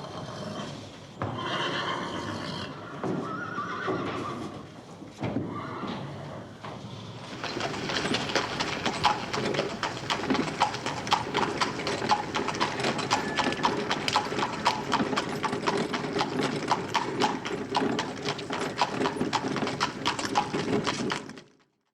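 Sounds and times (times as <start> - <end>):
horse hooves clip-clopping: 7.2 - 21.6.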